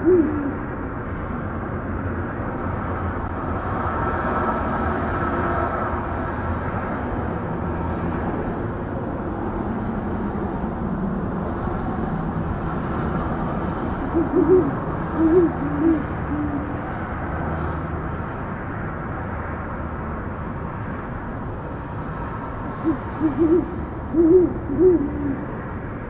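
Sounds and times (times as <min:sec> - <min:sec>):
owl hooting: 0:00.0 - 0:00.7, 0:14.0 - 0:16.9, 0:22.8 - 0:25.6
low background hum: 0:00.0 - 0:03.7, 0:13.4 - 0:17.3, 0:22.3 - 0:26.0.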